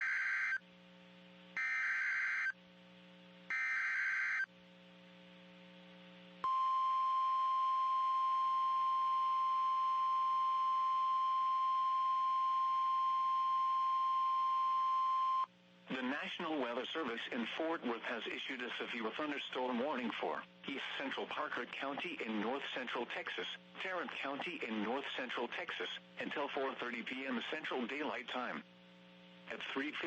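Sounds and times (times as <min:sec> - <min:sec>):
steady warning alarm tone: 0:00.0 - 0:00.6, 0:01.6 - 0:02.6, 0:03.5 - 0:04.5, 0:06.4 - 0:15.5.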